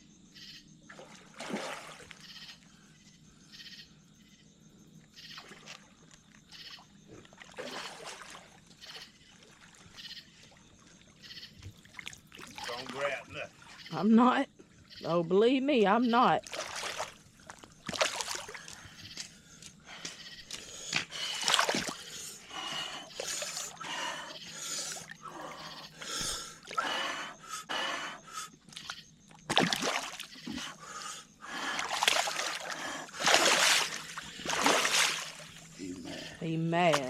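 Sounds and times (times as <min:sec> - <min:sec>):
water splashing from thrashing fish: 0:01.0 - 0:02.2, 0:07.3 - 0:08.6, 0:11.8 - 0:12.9, 0:16.4 - 0:18.8, 0:21.3 - 0:22.1, 0:29.5 - 0:30.5, 0:31.7 - 0:35.6.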